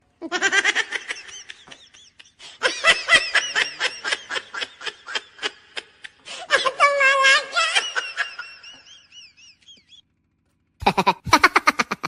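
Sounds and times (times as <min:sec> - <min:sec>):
high-pitched laughing: 0:10.8 - 0:12.0.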